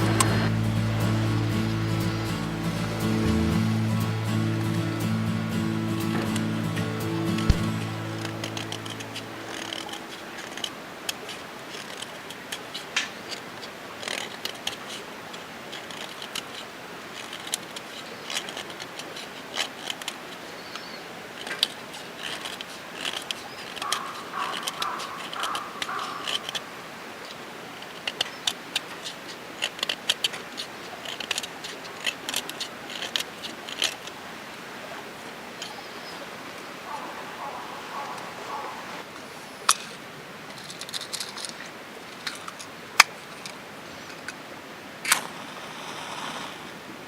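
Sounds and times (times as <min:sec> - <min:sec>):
high-pitched pulses: 0:00.0 - 0:10.1.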